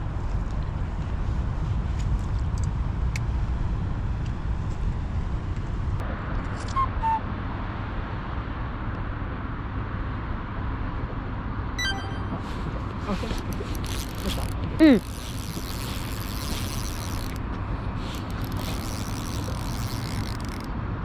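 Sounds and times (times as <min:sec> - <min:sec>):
faint clicks: 0:12.8 - 0:20.7.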